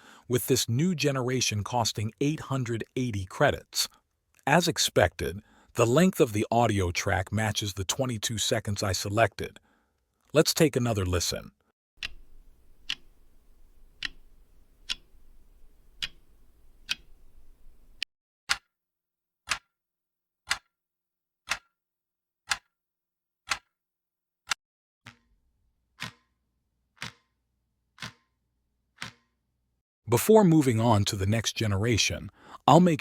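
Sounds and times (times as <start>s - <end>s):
clock ticking: 4.5s - 9.4s, 12.0s - 18.1s
faint background hiss: 12.0s - 18.0s.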